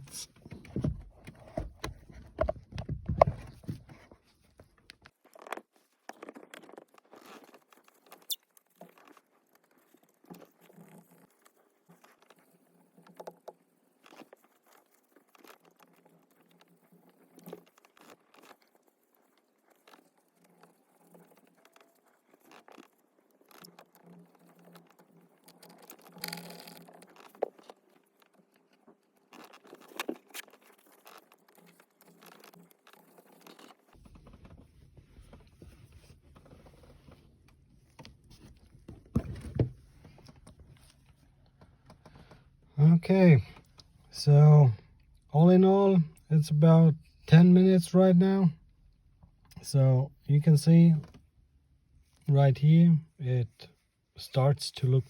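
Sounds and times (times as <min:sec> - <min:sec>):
scraping and rubbing plastic: 0:00.0 - 0:42.4.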